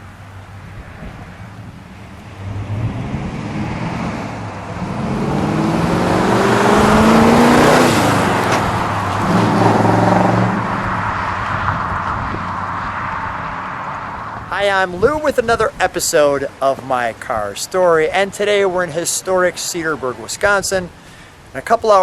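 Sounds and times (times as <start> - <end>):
car engine accelerating past: 2.2 - 14.5.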